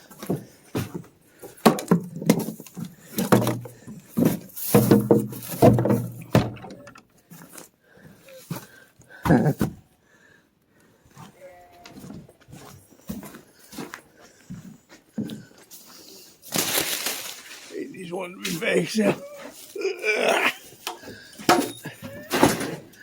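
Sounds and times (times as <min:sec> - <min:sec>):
knocks and thumps of bags: 0:00.1 - 0:06.7, 0:16.5 - 0:17.7
hay rustling: 0:16.5 - 0:19.8
low voice-like sounds: 0:17.7 - 0:20.7.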